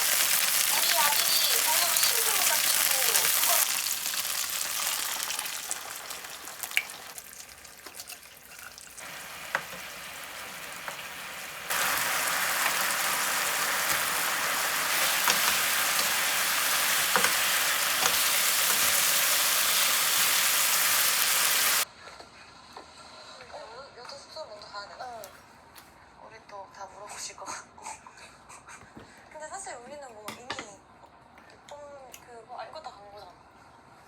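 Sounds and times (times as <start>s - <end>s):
food sizzling in a pan: 0.0s - 21.9s
utensil clicking in pan: 6.6s - 19.4s.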